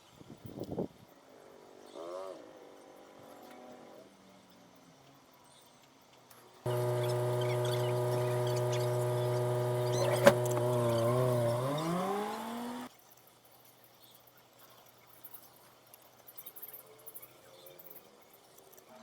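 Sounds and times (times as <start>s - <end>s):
sharp click: 6.7s - 12.9s
workshop machine motor running: 6.7s - 12.9s.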